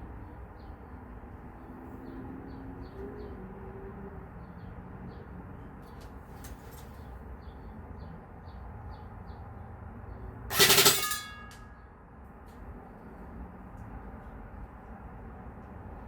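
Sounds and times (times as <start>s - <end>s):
metallic ring: 10.5s - 11.8s.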